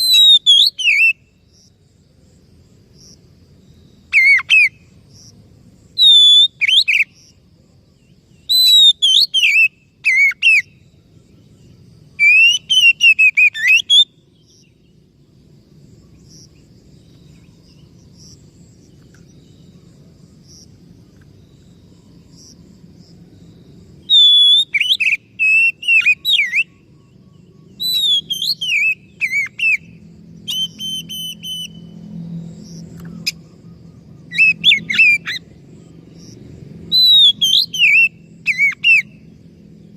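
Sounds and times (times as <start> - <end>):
bird singing whistled phrases: 0.0 - 1.3, 4.1 - 4.8, 6.0 - 7.2, 8.4 - 10.8, 12.2 - 14.7, 24.0 - 32.0, 34.2 - 35.4, 36.9 - 39.3.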